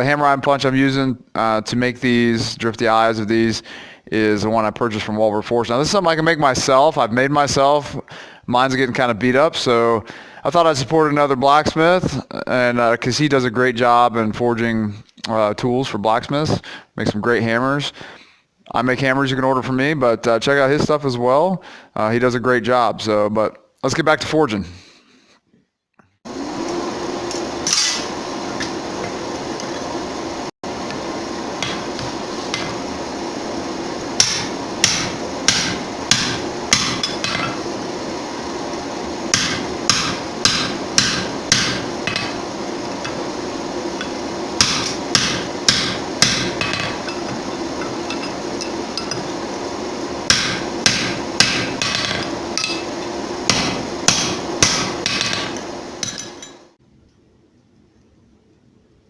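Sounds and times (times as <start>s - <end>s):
steady background noise: 26.3s - 59.0s
hammer striking steel on anvil: 27.7s - 28.1s, 31.6s - 32.8s, 34.2s - 37.6s, 39.3s - 42.4s, 44.0s - 49.3s, 50.3s - 56.6s.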